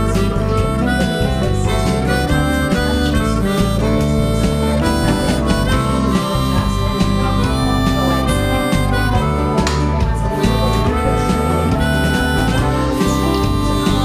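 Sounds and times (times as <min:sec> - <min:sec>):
guitar: 0:00.0 - 0:14.0
harmonica-like melody: 0:00.0 - 0:14.0
steady beat: 0:00.0 - 0:14.0.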